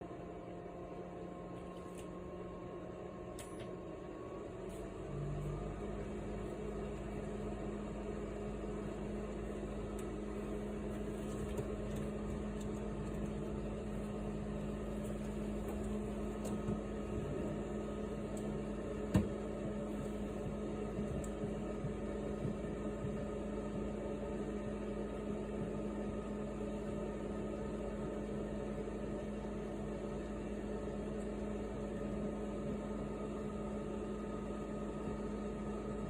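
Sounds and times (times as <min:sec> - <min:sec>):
fan heater humming: 0:00.0 - 0:36.0.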